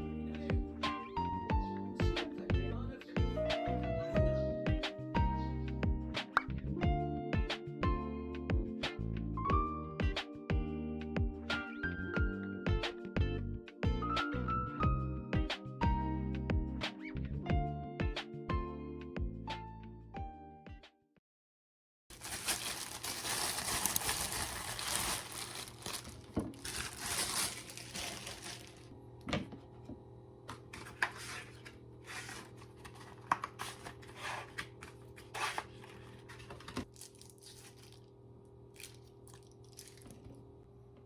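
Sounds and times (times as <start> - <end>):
packaging crinkling and tearing: 22.1 - 28.9, 30.7 - 38.1, 38.8 - 40.3.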